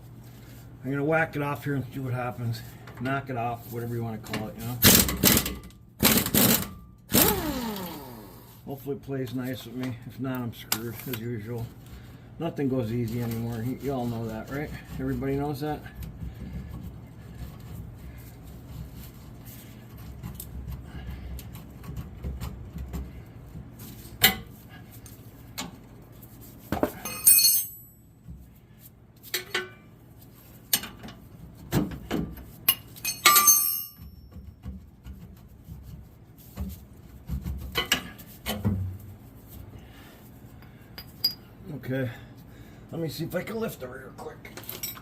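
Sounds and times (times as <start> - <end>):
hammer clanking on metal: 32.7 - 34.1.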